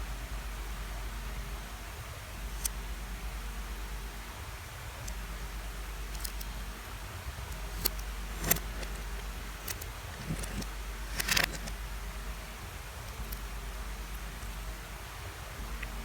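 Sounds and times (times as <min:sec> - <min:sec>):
steady low hum: 0:00.0 - 0:16.0
small rattling: 0:07.5 - 0:11.9
plastic bricks clicking: 0:07.6 - 0:11.8.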